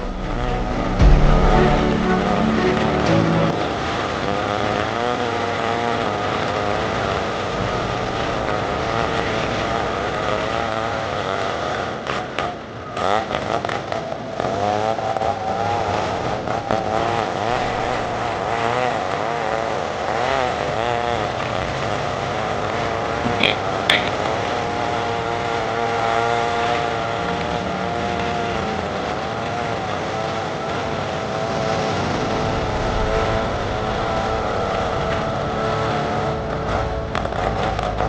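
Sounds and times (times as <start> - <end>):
chainsaw running at high revs: 16.8 - 31.5.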